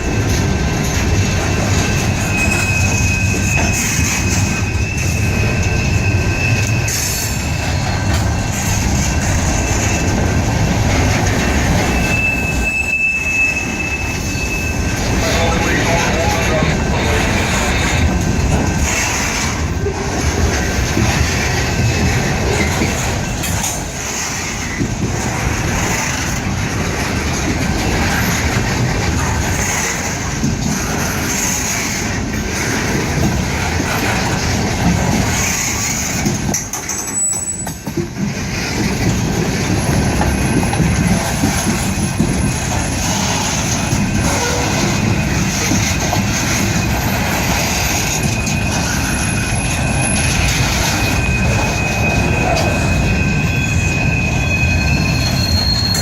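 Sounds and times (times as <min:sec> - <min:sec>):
freight train wheels rumbling: 0:00.0 - 0:56.0
thin wheel squeal: 0:02.2 - 0:07.8, 0:11.9 - 0:15.8, 0:36.9 - 0:37.8, 0:48.2 - 0:56.0.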